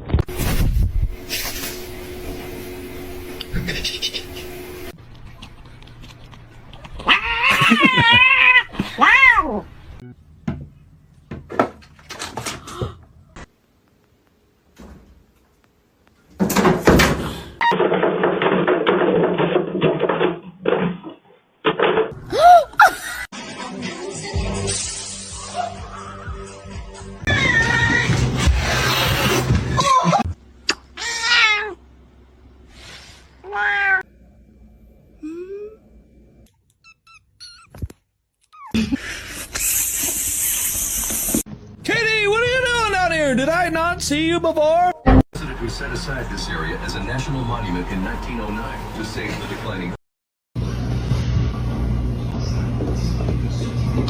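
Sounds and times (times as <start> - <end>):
cat yowling and meowing: 7.0 - 9.7, 27.3 - 28.1, 31.0 - 31.8, 33.4 - 34.0.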